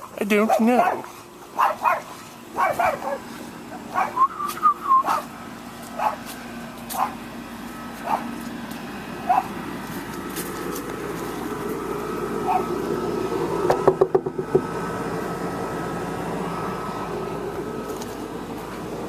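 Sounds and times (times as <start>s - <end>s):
dog whining and yipping: 3.9s - 5.3s, 8.0s - 8.3s, 12.5s - 12.7s.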